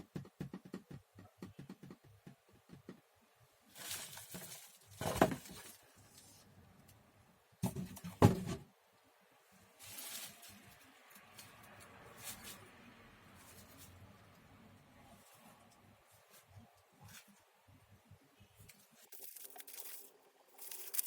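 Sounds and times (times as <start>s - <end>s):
packaging rustle: 3.7s - 6.0s.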